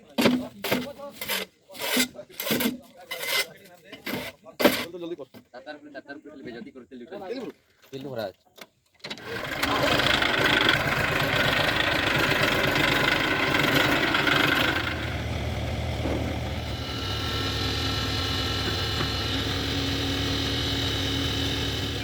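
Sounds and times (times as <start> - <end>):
diesel engine running: 9.1 - 22.0.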